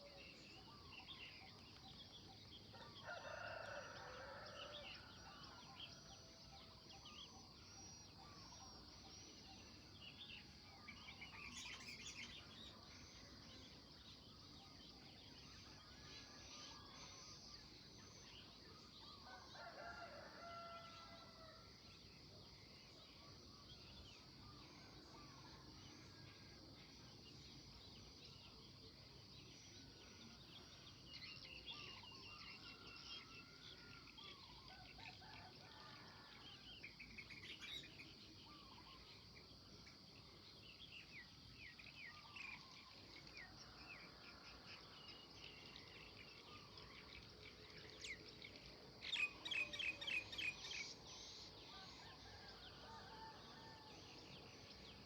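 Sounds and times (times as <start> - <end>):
rooster crowing: 19.6 - 21.2.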